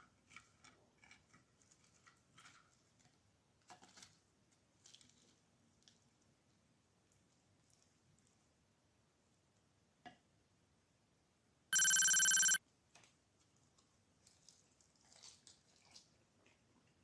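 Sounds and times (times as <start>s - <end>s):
electronic ringing tone: 11.8s - 12.6s.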